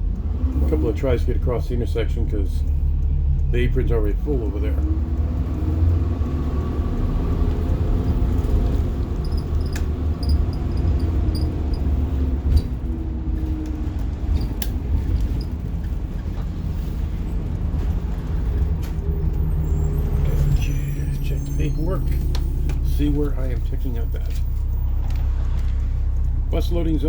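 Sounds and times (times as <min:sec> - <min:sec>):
bus diesel engine running: 0:00.0 - 0:27.0
light clicks and rattles: 0:06.9 - 0:16.2.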